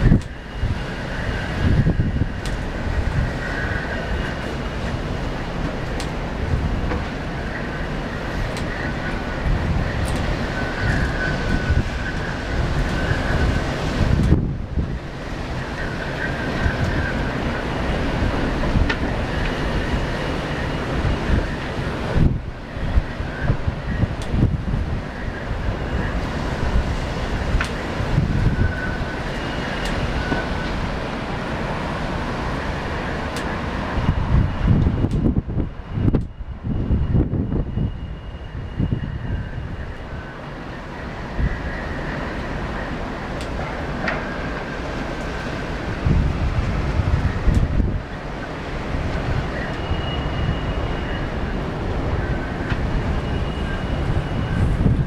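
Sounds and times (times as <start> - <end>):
high wind whistle: 0.0 - 55.0
wind gusting and buffeting: 0.0 - 55.0.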